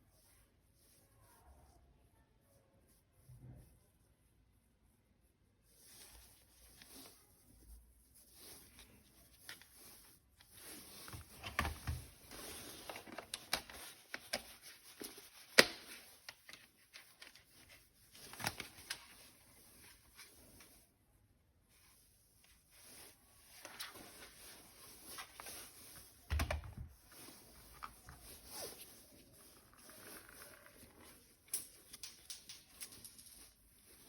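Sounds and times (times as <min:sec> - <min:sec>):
plastic packaging rustling: 0:08.3 - 0:20.3, 0:22.8 - 0:34.0.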